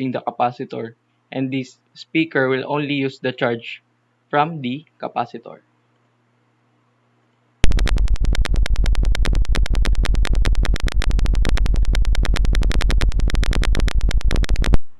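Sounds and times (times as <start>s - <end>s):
harsh crackling alarm buzz: 7.6s - 14.9s.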